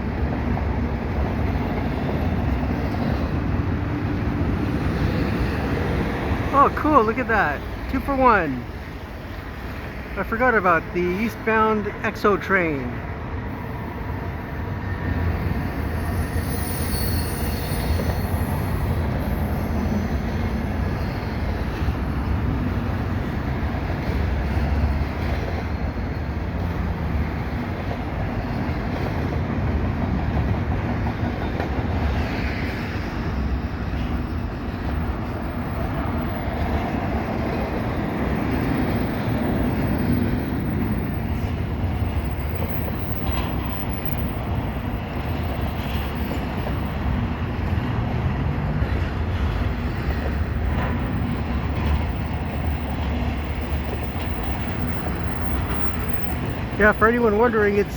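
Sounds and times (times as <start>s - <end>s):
train wheels rumbling on rails: 0.0s - 6.5s, 12.9s - 57.9s
wheel squeal: 15.9s - 18.9s.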